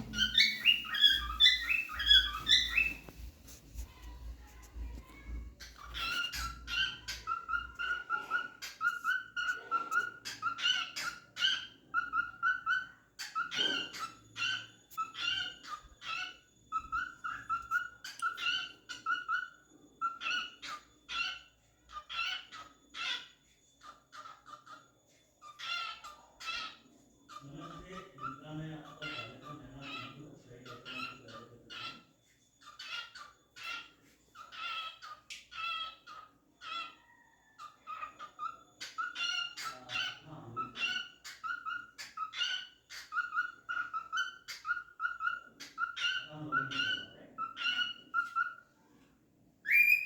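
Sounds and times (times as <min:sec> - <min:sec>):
cockatiel whistled chirps: 0:00.0 - 0:03.2, 0:49.6 - 0:50.0.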